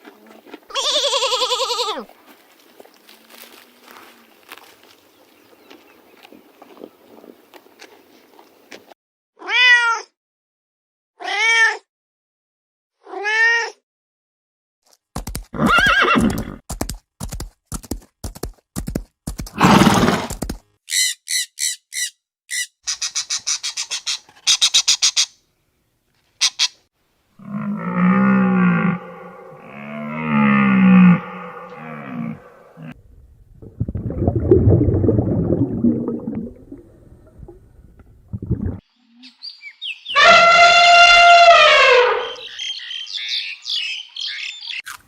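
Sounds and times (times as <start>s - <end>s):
loud rasping animal cries: 0.7s - 2.0s, 40.1s - 42.5s
low drawn-out animal call: 27.4s - 33.0s, 40.1s - 42.5s
high chirps and buzzing calls: 38.9s - 40.3s, 42.2s - 44.9s.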